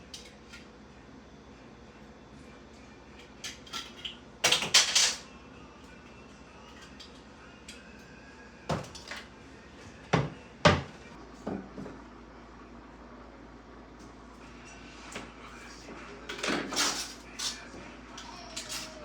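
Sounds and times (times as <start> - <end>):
cabinet doors and dishes clattering: 10.1 - 12.0.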